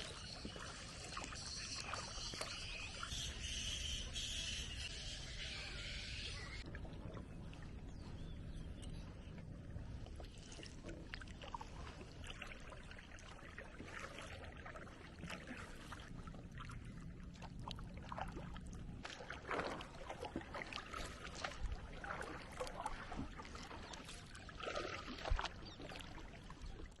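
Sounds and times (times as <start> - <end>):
water splashing around a boat: 0.0 - 27.0.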